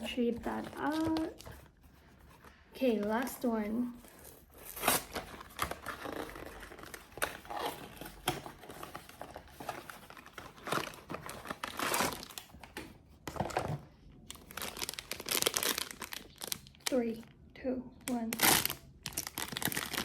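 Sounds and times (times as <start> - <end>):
packaging crinkling and tearing: 4.0 - 12.7, 13.3 - 17.1, 18.2 - 20.0.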